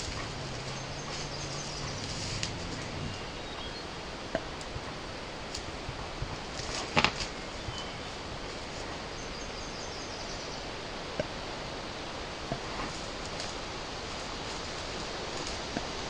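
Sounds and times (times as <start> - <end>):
rustle with clicks: 0.0 - 9.4, 12.4 - 16.0
steady microphone hiss: 0.0 - 16.0
faint high bird chirps: 0.3 - 4.1, 7.4 - 8.2.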